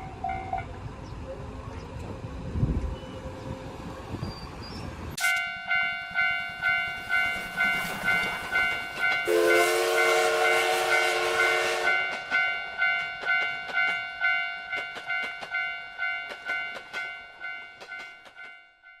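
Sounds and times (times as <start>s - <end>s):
railroad crossing warning bell: 0.0s - 0.8s, 5.2s - 19.0s
train horn chord: 9.2s - 12.2s.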